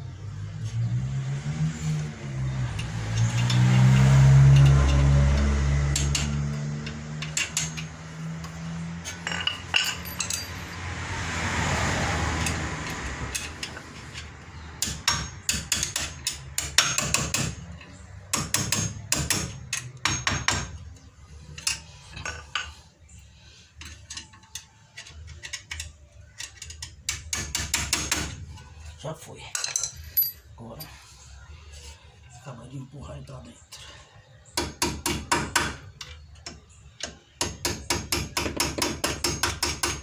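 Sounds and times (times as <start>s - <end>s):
vehicle engine running: 0.0s - 18.3s.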